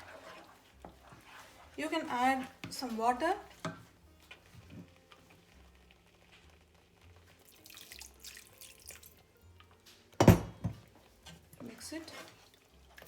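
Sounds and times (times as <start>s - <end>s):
water splashing into hot pan: 6.6s - 9.4s.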